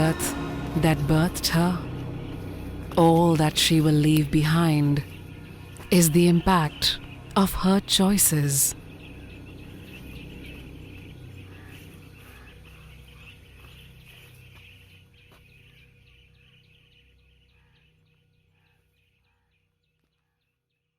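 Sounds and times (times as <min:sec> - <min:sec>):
low rumble: 0:00.0 - 0:16.5
birds calling and chirping: 0:00.0 - 0:20.9.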